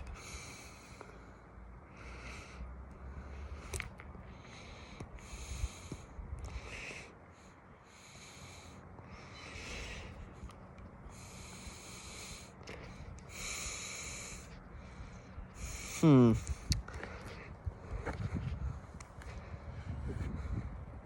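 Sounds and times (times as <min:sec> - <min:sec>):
person breathing heavily: 0:00.0 - 0:21.0
microphone handling rumble: 0:16.3 - 0:21.0.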